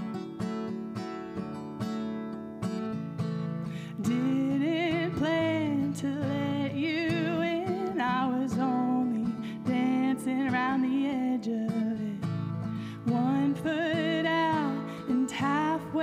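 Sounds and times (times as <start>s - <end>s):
acoustic guitar strumming: 0.0s - 16.0s
person singing: 4.0s - 16.0s.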